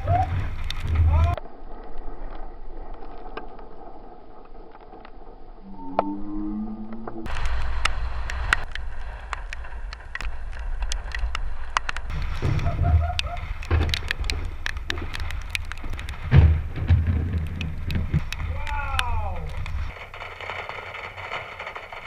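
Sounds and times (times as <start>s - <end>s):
raindrops tapping: 0.0s - 1.4s, 7.3s - 22.0s
steady low rumble: 0.0s - 22.0s.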